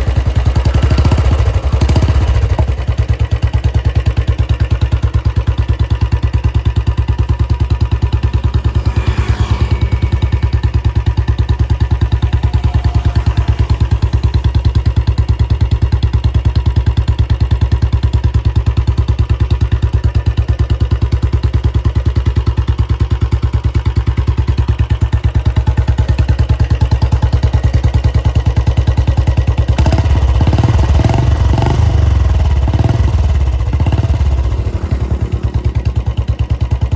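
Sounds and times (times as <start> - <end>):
motorcycle engine idling: 0.0 - 36.9.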